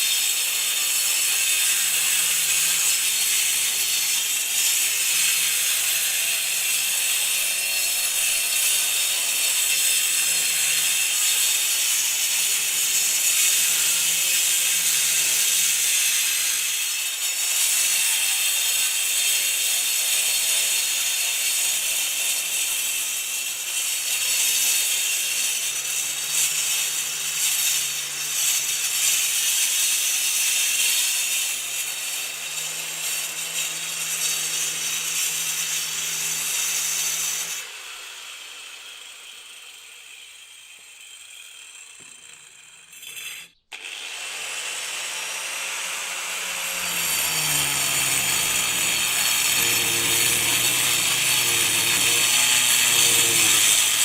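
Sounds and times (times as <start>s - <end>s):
angle grinder cutting concrete: 0.0s - 54.0s.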